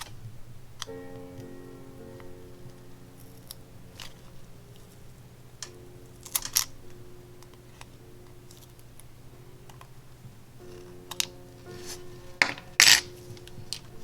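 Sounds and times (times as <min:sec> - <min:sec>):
small tools tapping phone parts: 0:12.4 - 0:13.1.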